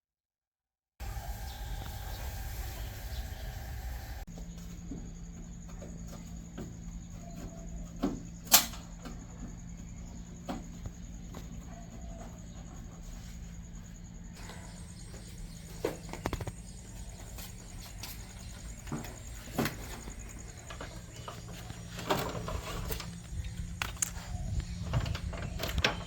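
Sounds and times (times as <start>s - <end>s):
steady low hum: 1.0s - 26.0s.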